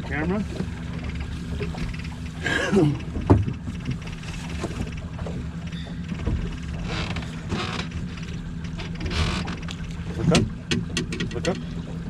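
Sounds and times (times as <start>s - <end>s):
boat motor humming: 0.0s - 12.0s.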